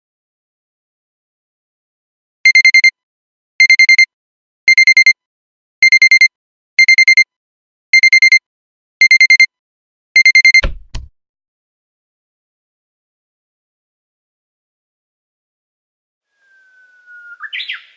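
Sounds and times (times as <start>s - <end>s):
digital alarm clock beeping: 2.5s - 3.0s, 3.6s - 4.1s, 4.7s - 5.2s, 5.8s - 7.3s, 8.0s - 8.4s, 9.0s - 9.5s, 10.2s - 10.7s.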